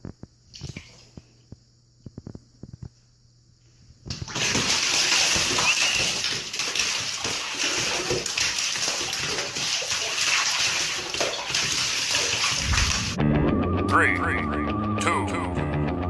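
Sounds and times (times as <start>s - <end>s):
water splashing and gushing: 4.2s - 13.2s.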